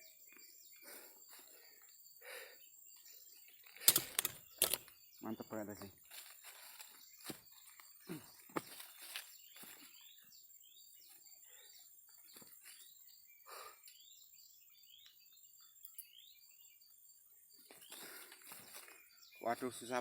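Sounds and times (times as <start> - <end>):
sharp click: 3.8 - 4.9.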